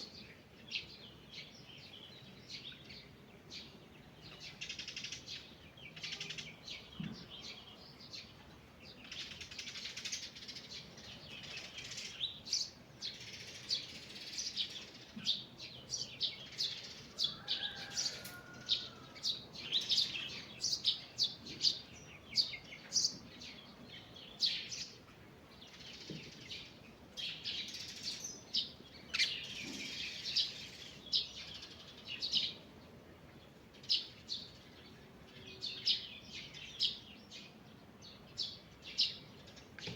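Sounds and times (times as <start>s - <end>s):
birds chirping and trilling: 0.0s - 39.9s.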